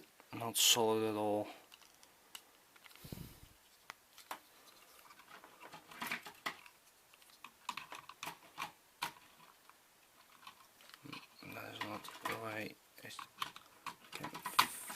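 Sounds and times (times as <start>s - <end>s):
plastic pieces clicking and rattling: 1.7s - 3.0s, 5.0s - 14.9s.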